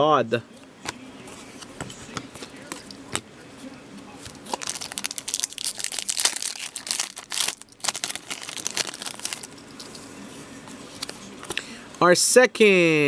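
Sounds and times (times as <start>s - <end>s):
card packaging crinkling: 4.2s - 9.6s.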